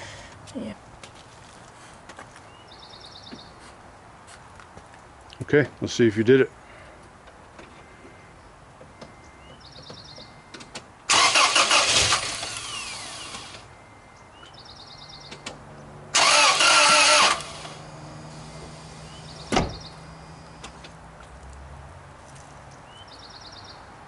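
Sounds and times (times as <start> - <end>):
truck starter cranking: 11.1 - 13.7, 16.2 - 17.8.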